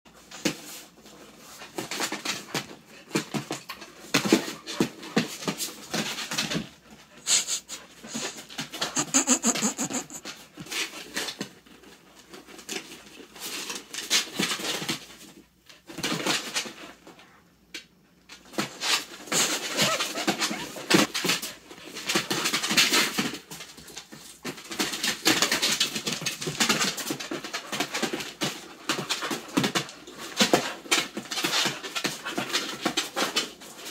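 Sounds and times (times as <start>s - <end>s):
dogs scuffling paws: 0.2s - 17.1s, 18.5s - 33.9s
dogs panting: 6.4s - 10.3s, 19.3s - 22.3s.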